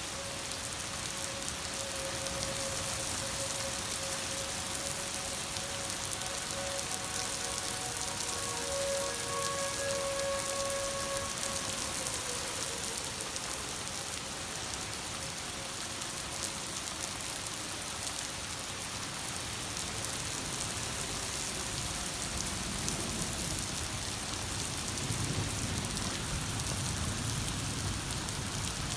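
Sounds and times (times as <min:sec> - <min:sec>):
tornado siren winding down: 0:00.0 - 0:18.2
steady rain: 0:00.0 - 0:28.9.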